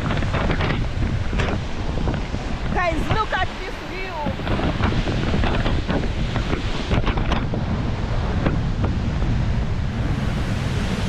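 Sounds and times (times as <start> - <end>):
wind buffeting microphone: 0.0 - 11.0
waterfall rushing: 1.1 - 6.9, 9.4 - 11.0.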